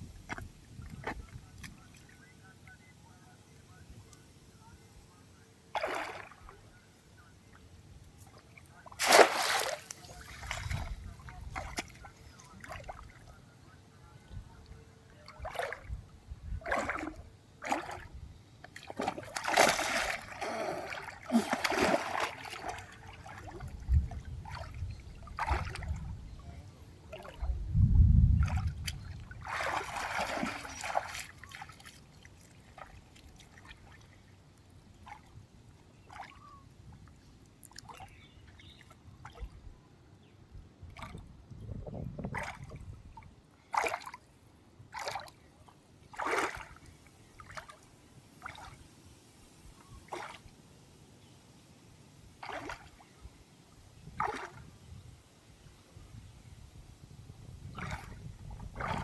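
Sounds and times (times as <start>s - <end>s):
water splashing and sloshing: 5.8s - 6.7s, 8.2s - 13.4s, 15.2s - 27.6s, 28.4s - 39.7s, 40.8s - 50.6s, 52.3s - 53.4s, 54.0s - 54.7s, 57.6s - 59.0s.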